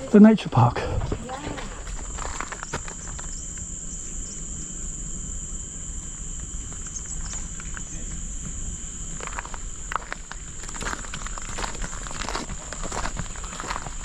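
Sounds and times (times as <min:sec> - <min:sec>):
light footsteps: 0:00.0 - 0:03.3, 0:07.6 - 0:14.0
high-pitched insect drone: 0:00.0 - 0:14.0.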